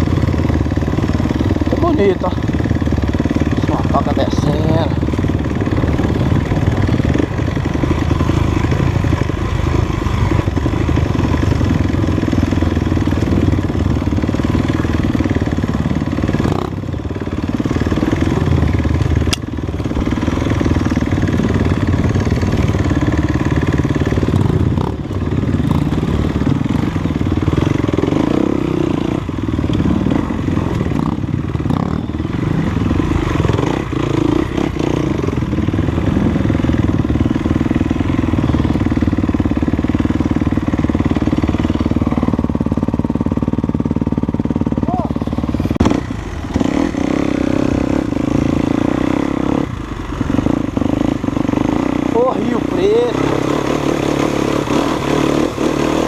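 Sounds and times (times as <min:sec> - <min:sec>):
dirt bike engine revving: 0:00.0 - 0:56.0
sharp click: 0:19.2 - 0:19.5.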